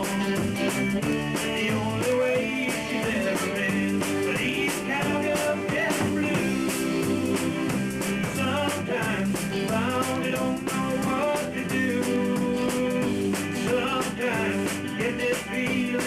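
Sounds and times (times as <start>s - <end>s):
drum kit beat: 0.0s - 16.0s
electric guitar: 0.0s - 16.0s
person singing: 0.0s - 16.0s.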